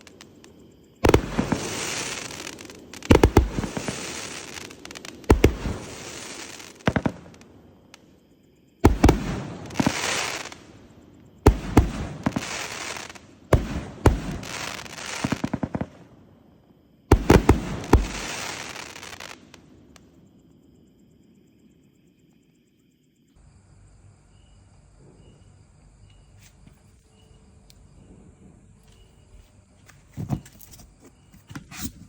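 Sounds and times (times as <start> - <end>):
fireworks crackling hiss: 0.0 - 8.1, 8.8 - 16.1, 17.1 - 20.0
fireworks sharp bangs: 0.0 - 8.1, 8.8 - 16.2, 17.1 - 20.0.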